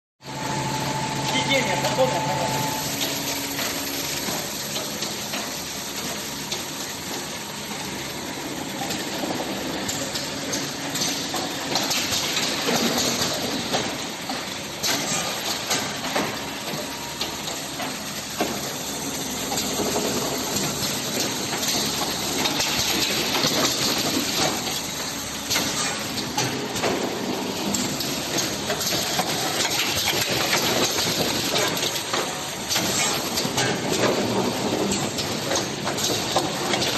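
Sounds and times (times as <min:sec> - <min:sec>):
packaging machine clattering: 0:19.8 - 0:24.8, 0:27.5 - 0:36.9.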